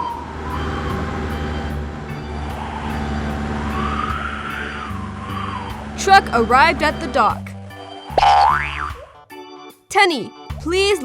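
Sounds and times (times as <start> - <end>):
rising and falling whine: 0.0 - 7.5
cartoon truck engine drone: 0.0 - 9.2
light background music: 0.0 - 11.0.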